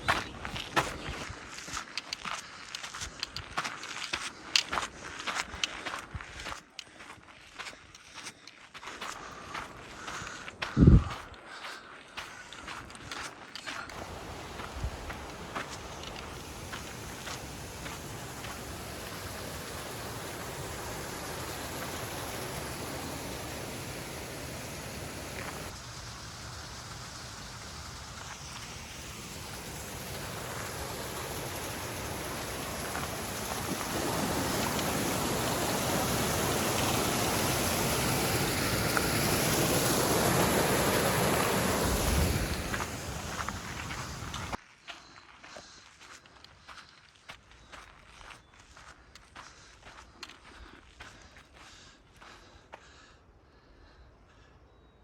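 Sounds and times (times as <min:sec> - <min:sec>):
water rushing: 0:13.9 - 0:44.6.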